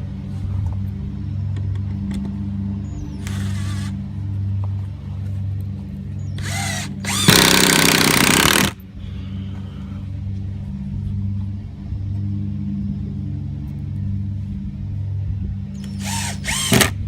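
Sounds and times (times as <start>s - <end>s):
steady low hum: 0.0s - 17.0s
power drill whining: 3.2s - 4.0s, 6.4s - 8.8s, 15.8s - 17.0s.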